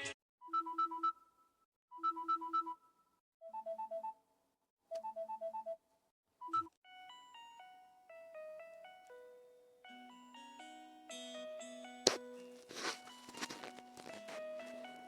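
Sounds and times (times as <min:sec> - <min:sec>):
electronic ringtone melody: 0:02.0 - 0:02.9, 0:06.4 - 0:13.8.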